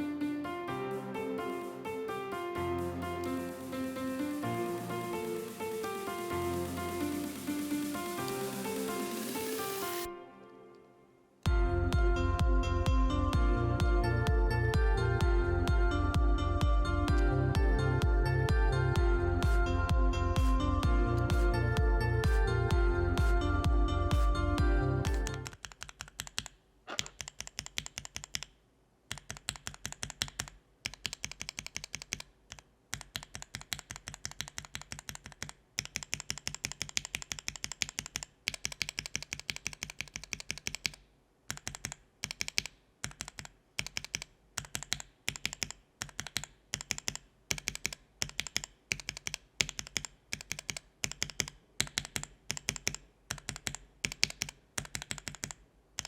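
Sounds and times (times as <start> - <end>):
mechanical keyboard switches clacking: 29.1 - 55.6.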